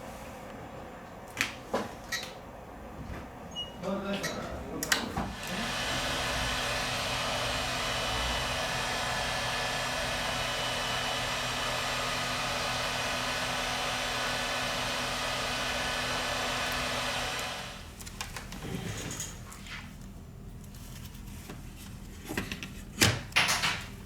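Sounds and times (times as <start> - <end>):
hot-air gun blowing: 5.3 - 17.9.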